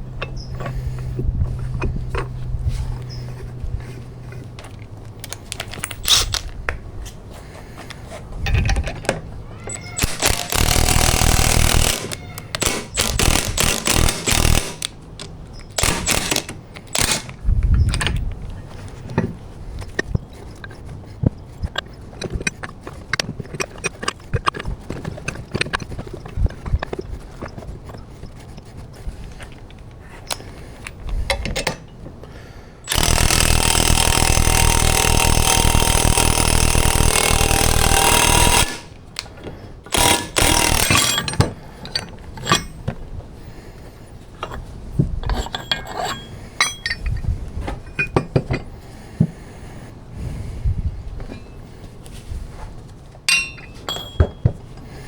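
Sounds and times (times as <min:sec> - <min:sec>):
tools clinking on metal: 0:04.3 - 0:06.6, 0:08.4 - 0:18.4, 0:21.4 - 0:28.8, 0:30.3 - 0:32.0, 0:32.9 - 0:43.1, 0:44.3 - 0:48.7, 0:53.3 - 0:54.6
power tool running: 0:10.0 - 0:15.0, 0:15.8 - 0:17.4, 0:32.9 - 0:39.0, 0:39.9 - 0:41.4.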